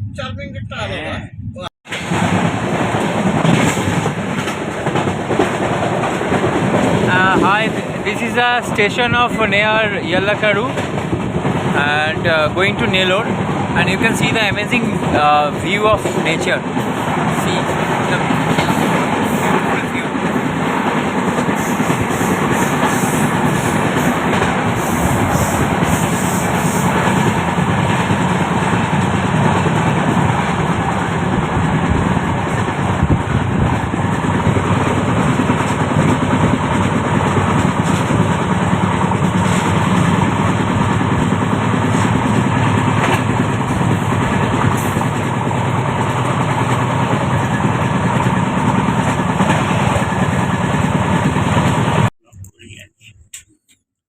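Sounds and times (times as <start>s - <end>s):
passenger train running: 0.0s - 53.2s.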